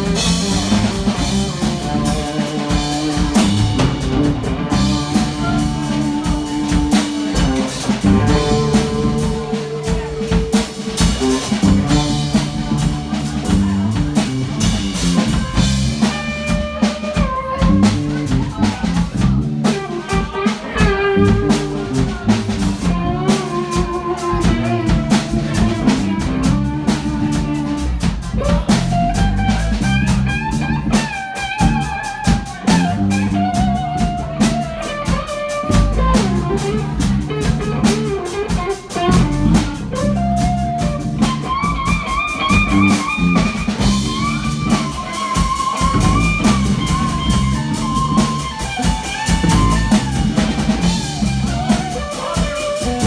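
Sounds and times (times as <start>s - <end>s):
bass line: 0.0s - 53.0s
drum kit: 0.0s - 53.0s
lead guitar melody with vibrato: 30.3s - 53.0s.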